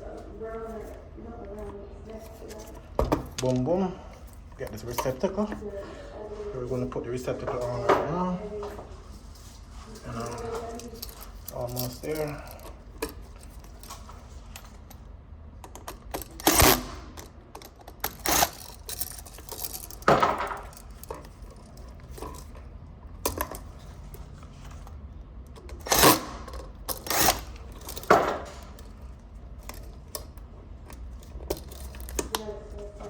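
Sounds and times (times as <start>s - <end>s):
metallic clicks and clinks: 10.1s - 15.0s, 15.6s - 23.9s, 25.5s - 32.5s.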